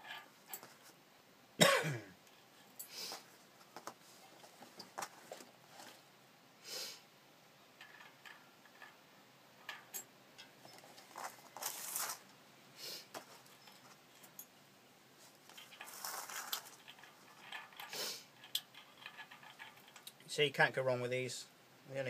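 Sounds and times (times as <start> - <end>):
light metal clicks and clinks: 7.8 - 9.0, 9.6 - 11.4, 13.2 - 14.6, 15.5 - 20.2
short scraping rustles: 10.6 - 14.0, 15.2 - 20.0.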